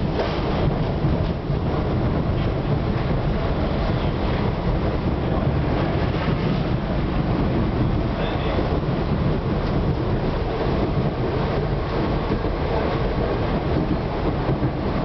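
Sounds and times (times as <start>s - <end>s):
train wheels rumbling on rails: 0.0s - 15.0s.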